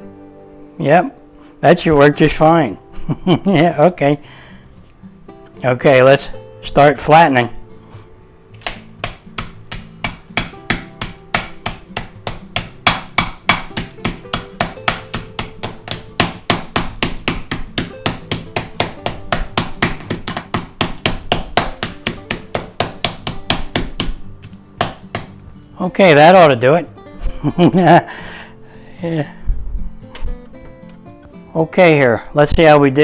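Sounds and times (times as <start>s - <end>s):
metal bar pounding meat in bag: 8.6s - 25.4s.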